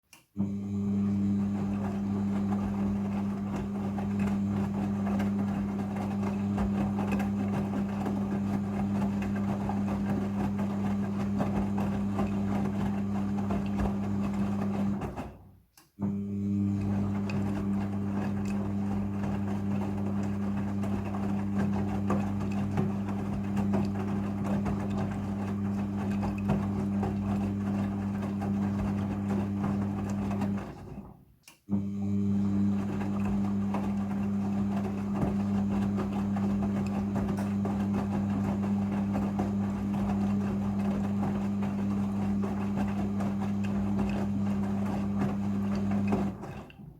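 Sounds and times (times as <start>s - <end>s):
washing machine motor humming: 0.1s - 46.9s
wet load tumbling: 16.7s - 31.1s, 32.1s - 46.9s.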